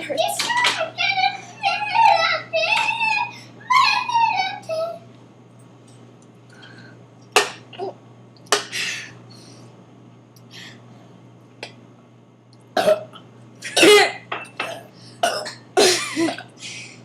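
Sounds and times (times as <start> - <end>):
girl coughing and clearing throat: 12.8 - 16.5.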